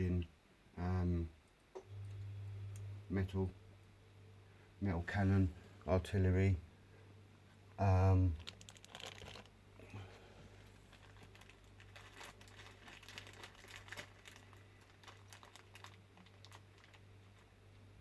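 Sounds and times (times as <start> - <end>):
low steady hum: 0.0 - 18.0
plastic packaging crinkling: 8.2 - 17.6.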